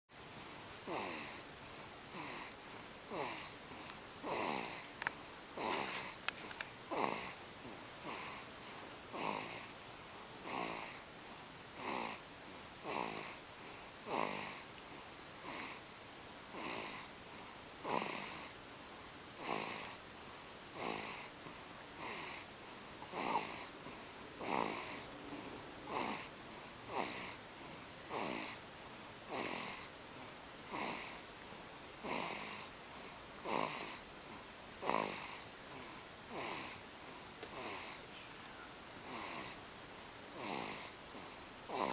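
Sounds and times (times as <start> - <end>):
baby snoring: 0.8 - 1.5, 2.1 - 5.0, 5.6 - 7.4, 8.0 - 8.5, 9.1 - 9.7, 10.4 - 11.1, 11.8 - 15.9, 16.5 - 18.6, 19.4 - 20.0, 20.7 - 28.6, 29.3 - 30.0, 30.7 - 31.2, 32.0 - 36.8, 37.4 - 39.6, 40.3 - 41.9.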